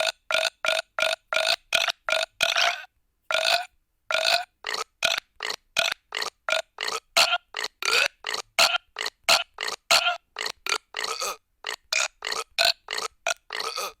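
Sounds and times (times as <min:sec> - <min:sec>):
person burping: 0:06.2 - 0:14.0.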